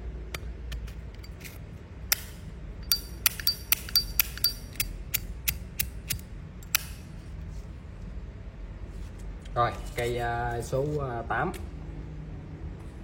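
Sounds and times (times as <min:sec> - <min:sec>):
metal lighter clicks and clinks: 0:02.1 - 0:07.0.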